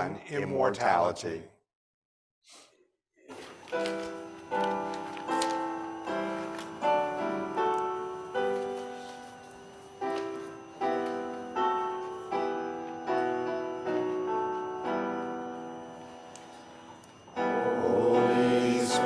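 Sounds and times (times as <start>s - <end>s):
piano playing hymn chords: 3.8s - 19.0s.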